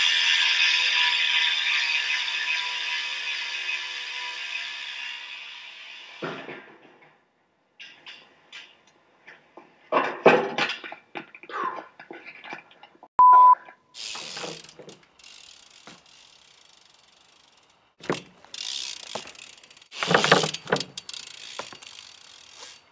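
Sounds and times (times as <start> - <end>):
bike hub ratchet clicking: 0.0 - 6.2, 14.0 - 22.9
bike clattering: 7.8 - 12.9, 14.0 - 22.9
loud steady beep: 13.2 - 13.6.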